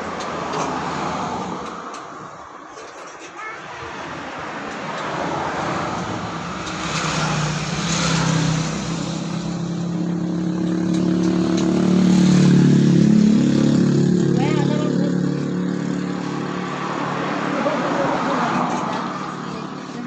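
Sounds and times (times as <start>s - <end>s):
traffic-like rush of noise: 0.0s - 20.0s
vehicle engine running: 6.0s - 20.0s.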